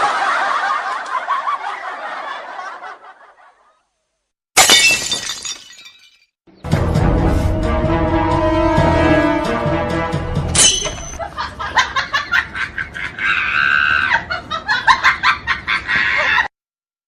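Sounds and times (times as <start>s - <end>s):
short music: 6.7s - 10.6s
cartoonish laughing sound effect: 15.5s - 16.5s.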